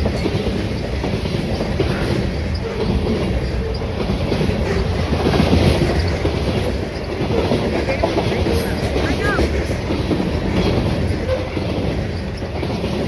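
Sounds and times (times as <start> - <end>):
freight train rumbling: 0.0 - 13.0
steel wheels clacking: 0.0 - 13.0
wheel squeals: 0.0 - 13.0.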